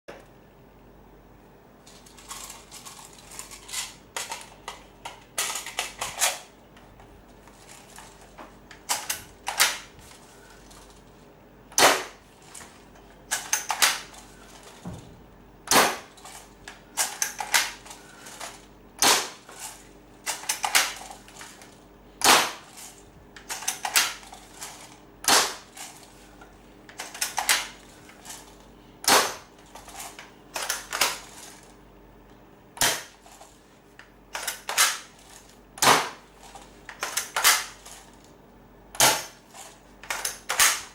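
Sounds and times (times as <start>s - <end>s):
airsoft rifle firing: 11.7s - 12.2s, 15.7s - 16.1s, 19.0s - 19.4s, 22.2s - 22.7s, 25.2s - 25.7s, 29.0s - 29.5s, 32.8s - 33.2s, 35.8s - 36.2s, 39.0s - 39.4s.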